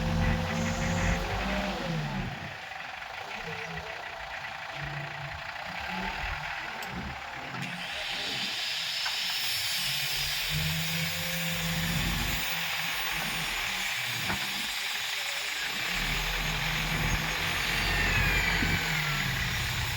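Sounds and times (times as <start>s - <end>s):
heavy diesel engine running: 0.0s - 19.9s.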